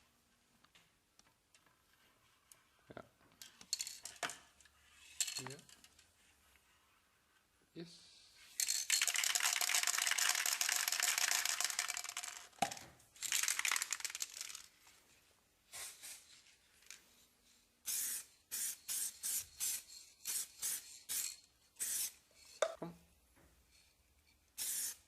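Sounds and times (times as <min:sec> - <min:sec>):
spray paint hissing: 0:17.9 - 0:22.2, 0:24.6 - 0:25.0.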